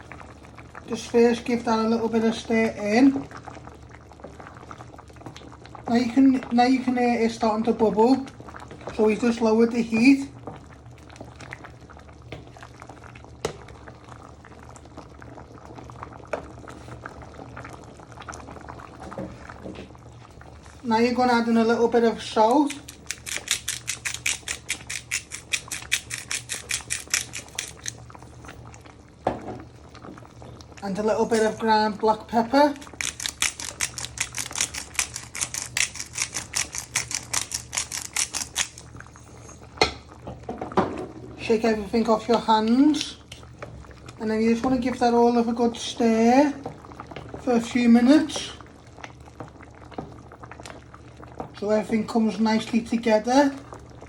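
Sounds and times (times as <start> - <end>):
thick sauce bubbling and popping: 2.5 - 5.9, 8.2 - 9.2, 10.0 - 20.8, 22.4 - 40.8, 42.3 - 45.2, 46.1 - 54.0
pepper grinder clicking: 22.6 - 28.0, 32.8 - 38.8.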